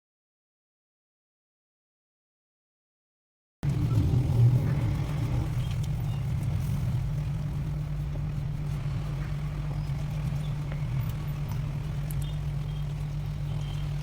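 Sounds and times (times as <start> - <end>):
low motor hum: 3.6 - 14.0.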